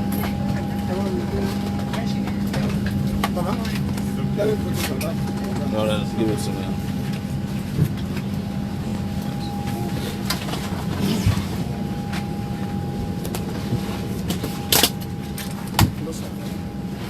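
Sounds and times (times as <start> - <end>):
airliner cabin drone: 0.0 - 17.0.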